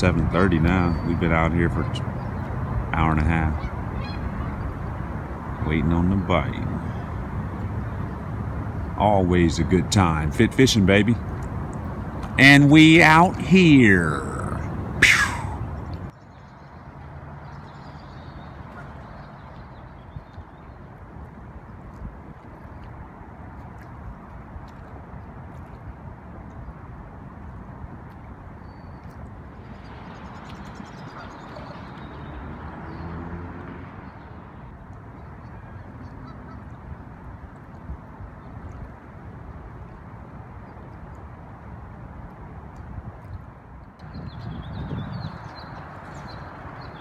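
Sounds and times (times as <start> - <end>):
birds chirping: 0.0 - 16.1, 44.1 - 47.0
faint honking: 0.0 - 16.1
low outdoor rumble: 0.0 - 16.1
water noise: 0.0 - 16.1, 45.3 - 47.0
wind: 0.0 - 47.0.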